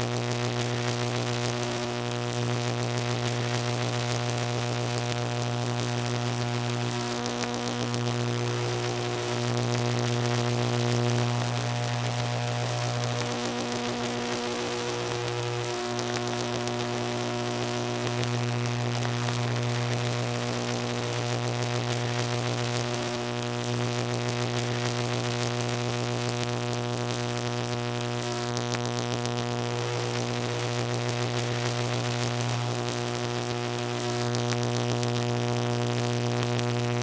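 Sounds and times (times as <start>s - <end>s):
crackling hiss: 0.0s - 37.0s
electrical buzz: 0.0s - 37.0s.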